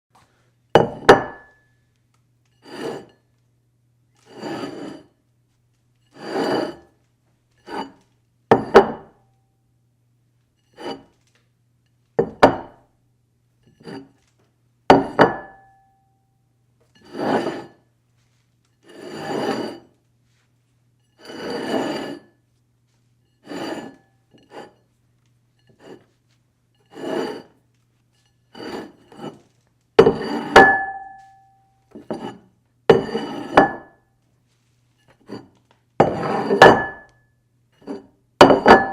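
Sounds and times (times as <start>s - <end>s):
plate knocking and ringing: 0.8s - 1.7s, 8.5s - 9.2s, 12.2s - 12.8s, 14.9s - 16.1s, 30.0s - 34.0s, 36.0s - 37.2s, 38.4s - 38.9s
plate scraping across table: 2.6s - 3.2s, 4.2s - 5.1s, 6.1s - 6.9s, 7.6s - 9.1s, 10.7s - 11.2s, 13.7s - 14.2s, 17.0s - 17.8s, 18.8s - 19.9s, 21.2s - 22.4s, 23.4s - 24.8s, 25.6s - 26.2s, 26.8s - 27.6s, 28.5s - 31.2s, 32.0s - 33.9s, 35.0s - 37.1s.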